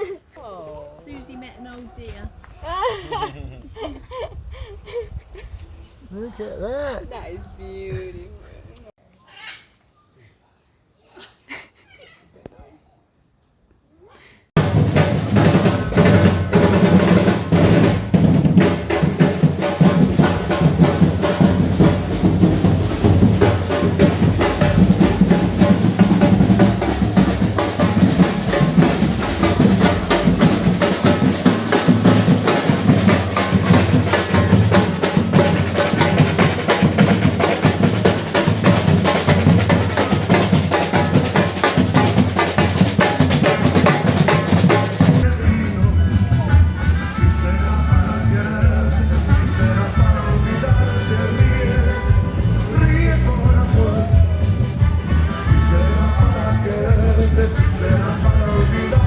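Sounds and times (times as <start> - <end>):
drum-heavy music: 14.6 - 59.0.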